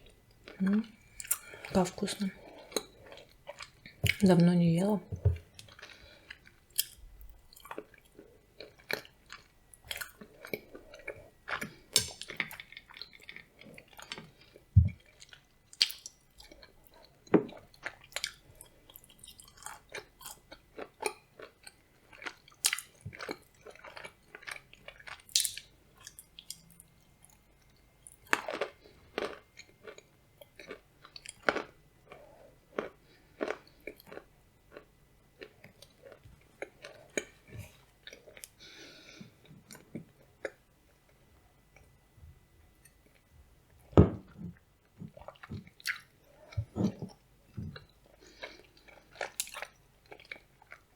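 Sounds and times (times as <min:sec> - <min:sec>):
nuts crunching while chewing: 0:17.6 - 0:32.2.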